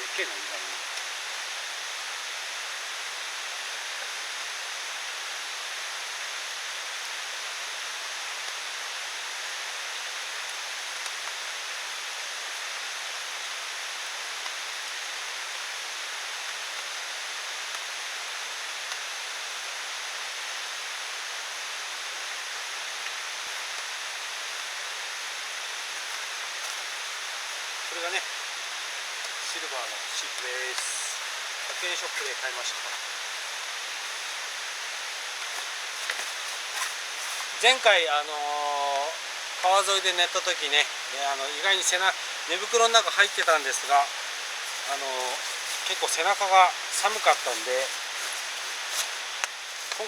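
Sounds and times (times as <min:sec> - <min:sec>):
rain hiss: 0:00.0 - 0:50.0
faint rain taps: 0:29.2 - 0:37.9, 0:41.6 - 0:50.0.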